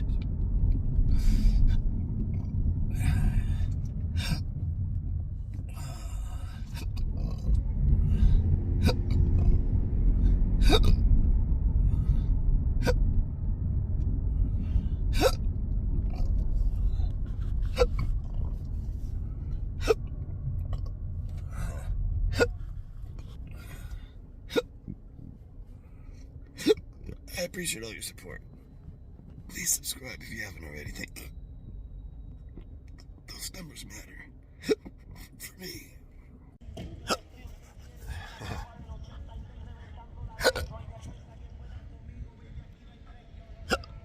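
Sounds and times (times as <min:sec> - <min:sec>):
low rumble: 0:00.0 - 0:44.0
gasping breath: 0:02.9 - 0:04.6, 0:05.6 - 0:09.3, 0:11.8 - 0:13.0
man hiccuping: 0:10.6 - 0:11.0, 0:40.4 - 0:40.7, 0:43.7 - 0:44.0.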